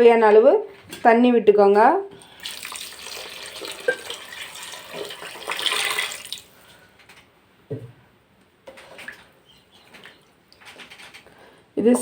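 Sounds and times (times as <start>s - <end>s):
water pouring into a pan: 2.2s - 6.6s.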